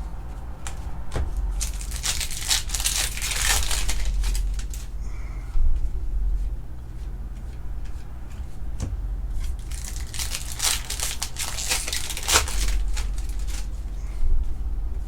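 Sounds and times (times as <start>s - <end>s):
wrapper crinkling and tearing: 1.5s - 4.9s, 9.5s - 13.7s.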